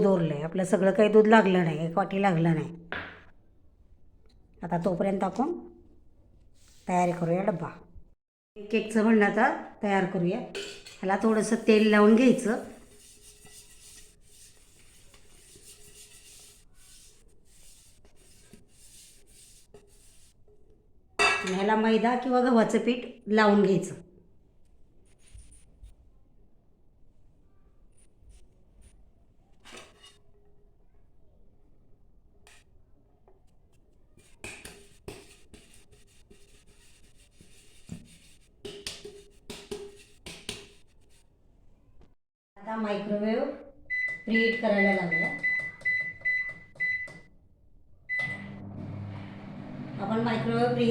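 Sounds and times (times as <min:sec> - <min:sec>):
rubbing inside cake tin: 0:11.3 - 0:20.4, 0:33.9 - 0:41.3.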